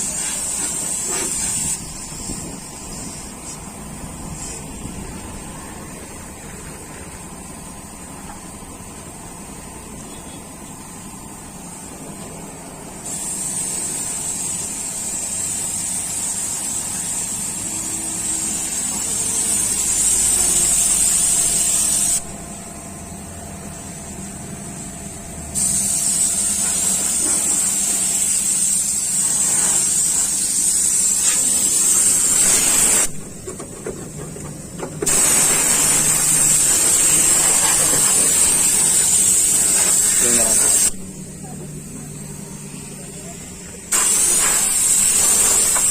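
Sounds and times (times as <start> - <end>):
hiss of spray jet: 0.0 - 5.3, 13.0 - 22.4, 25.5 - 33.2, 35.0 - 41.0, 43.9 - 45.9.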